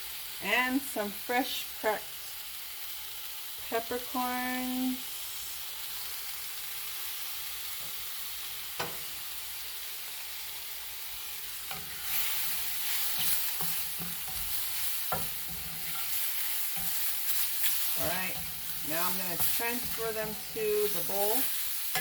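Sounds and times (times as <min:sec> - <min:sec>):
vegetables sizzling in a frying pan: 0:00.0 - 0:22.0
spatula scraping a pan: 0:11.4 - 0:22.0.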